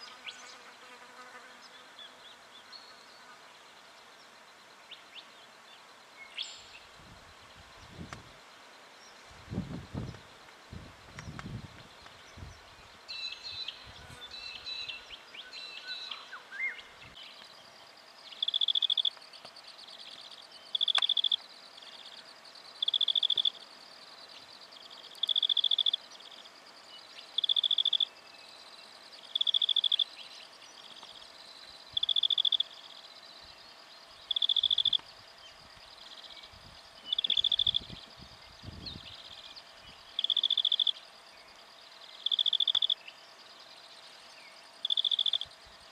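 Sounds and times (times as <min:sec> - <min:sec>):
scattered animal chirps: 0:20.7 - 0:21.4, 0:37.1 - 0:37.9.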